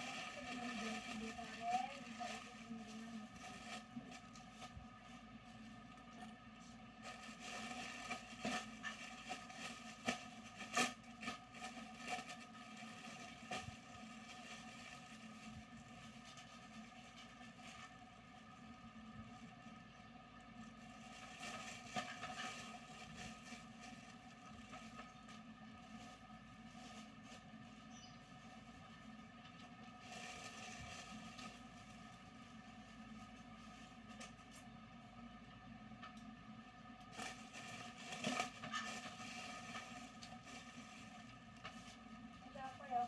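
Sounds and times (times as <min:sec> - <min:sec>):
plastic packaging crinkling: 0:00.0 - 0:06.1, 0:06.9 - 0:18.6, 0:37.0 - 0:43.0
steady electrical hum: 0:00.0 - 0:43.0.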